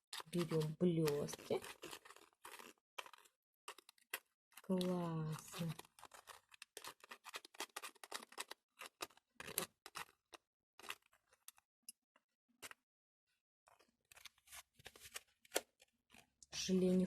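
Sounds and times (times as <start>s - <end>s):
plastic tray clicking and crinkling: 0.0s - 11.6s.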